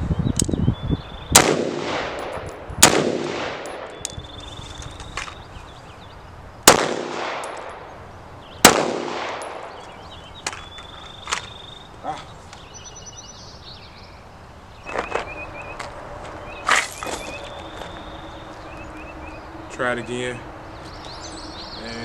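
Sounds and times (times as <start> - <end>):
gunshots with long echo: 1.3 - 4.0, 6.6 - 7.9, 8.6 - 9.8.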